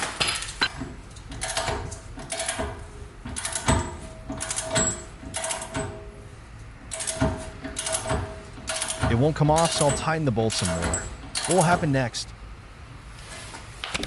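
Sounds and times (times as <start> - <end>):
wrench clicking and scraping: 0.4 - 5.9.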